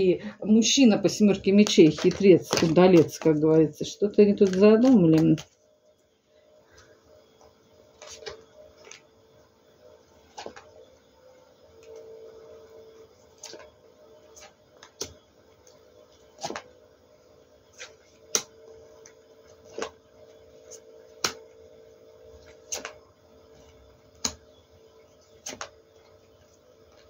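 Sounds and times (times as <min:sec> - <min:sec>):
faint steady hum: 0:00.0 - 0:27.0.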